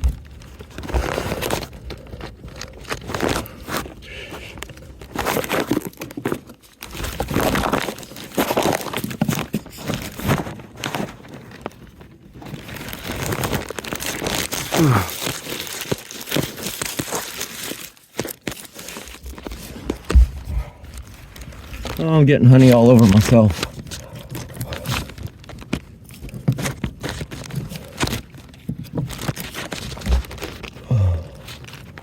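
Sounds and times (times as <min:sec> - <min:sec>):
honeycomb crunching: 0:00.0 - 0:32.0.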